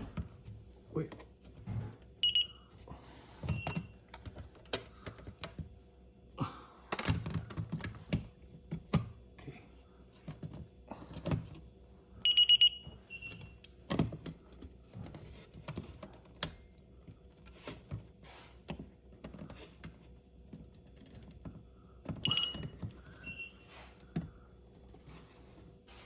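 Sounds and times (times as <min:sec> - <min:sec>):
high-pitched alarm panel beeps: 0:02.2 - 0:02.6, 0:12.2 - 0:13.5, 0:22.2 - 0:23.6.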